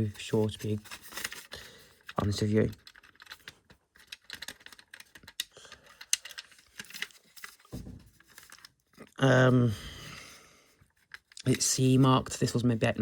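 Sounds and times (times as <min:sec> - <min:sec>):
plastic casing clicking and rustling: 0:00.2 - 0:09.2.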